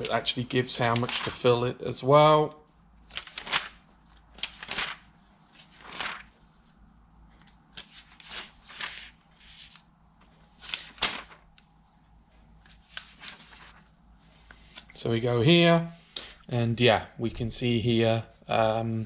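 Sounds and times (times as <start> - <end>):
paper pages turning: 0.0 - 1.4, 3.0 - 11.8, 12.5 - 15.0.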